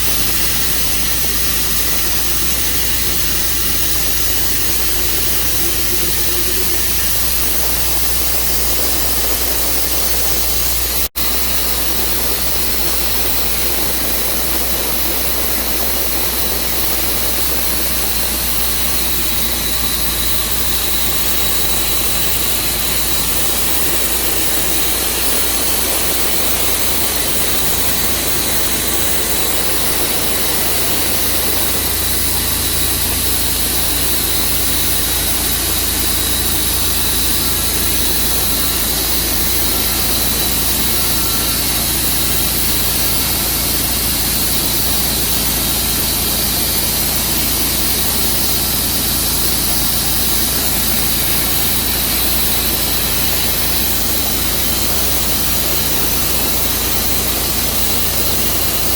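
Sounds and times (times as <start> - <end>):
gas-powered saw running: 0.0 - 58.9.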